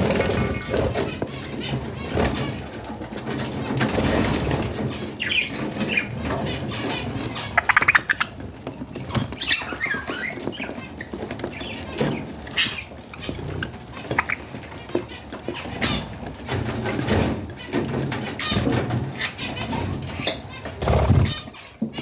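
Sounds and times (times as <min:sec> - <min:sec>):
budgies chirping: 0:00.0 - 0:22.0
rustling and scratching: 0:00.0 - 0:22.0
wing flutter: 0:20.8 - 0:21.5.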